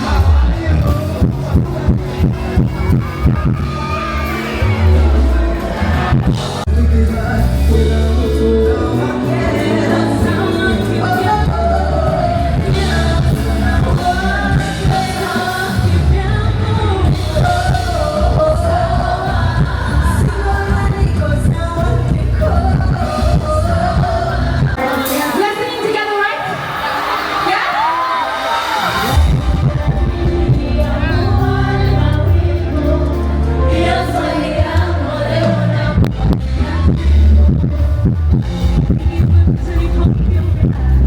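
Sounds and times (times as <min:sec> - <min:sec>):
pop music with singing: 0:00.0 - 0:41.0.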